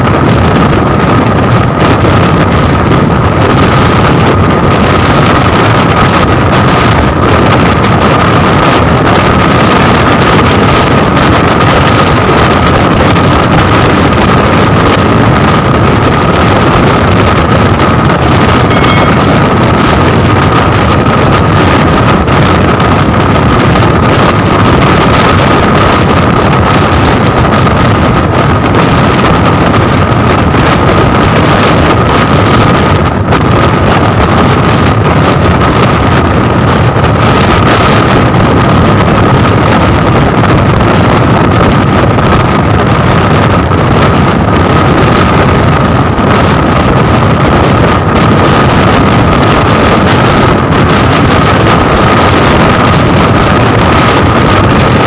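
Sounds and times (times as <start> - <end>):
train running at speed: 0.0 - 55.0
wind on microphone: 0.0 - 55.0
thin steady whine: 1.2 - 44.4.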